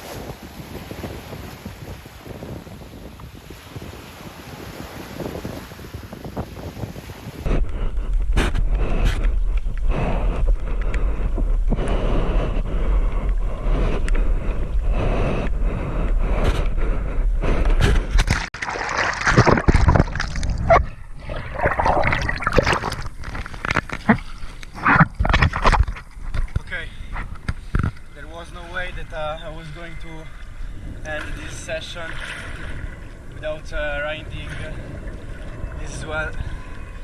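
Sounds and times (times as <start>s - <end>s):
water splashing and sloshing: 0.0s - 37.0s
wind buffeting microphone: 0.0s - 37.0s.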